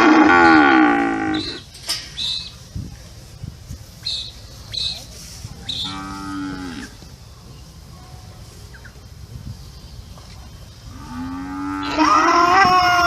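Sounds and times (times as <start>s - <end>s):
cow mooing: 0.0s - 1.6s, 5.8s - 6.9s, 11.0s - 13.0s.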